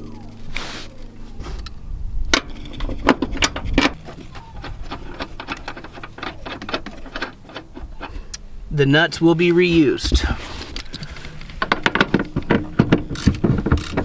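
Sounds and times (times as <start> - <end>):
ratchet wrench clicking: 13.1 - 14.0.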